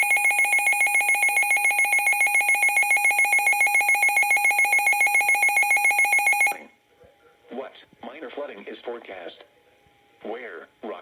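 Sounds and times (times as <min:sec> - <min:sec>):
pulsing electronic alarm warble: 0:00.0 - 0:06.7.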